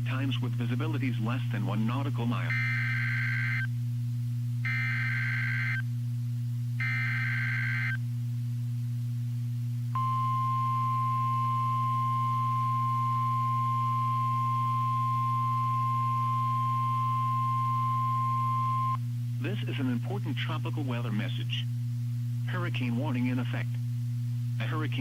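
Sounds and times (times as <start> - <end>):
steady low hum: 0.0 - 25.0
steady warning alarm tone: 2.5 - 3.7, 4.6 - 5.8, 6.8 - 8.0, 10.0 - 19.0.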